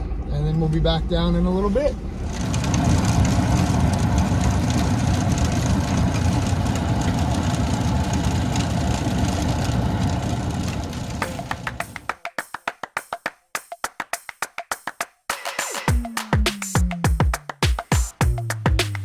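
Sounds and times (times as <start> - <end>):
vehicle engine idling: 0.0 - 12.1.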